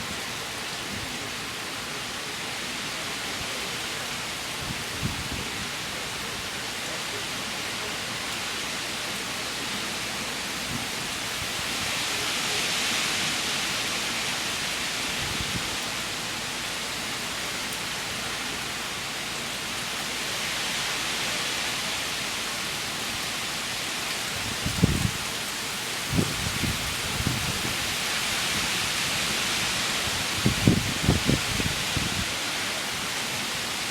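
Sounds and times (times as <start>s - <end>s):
heavy rain: 0.0s - 33.9s
gusting wind: 4.3s - 6.5s, 14.2s - 16.8s, 24.2s - 33.9s.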